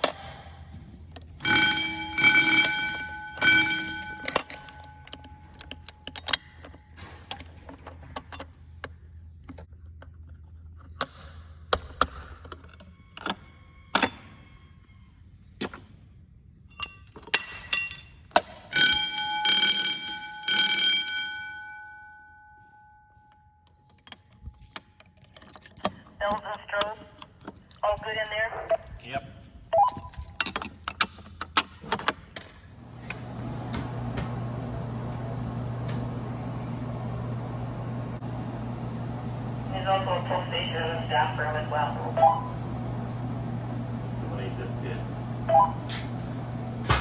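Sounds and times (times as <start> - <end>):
fire alarm bell ringing: 1.4 - 7.2, 18.7 - 23.9, 40.0 - 42.9.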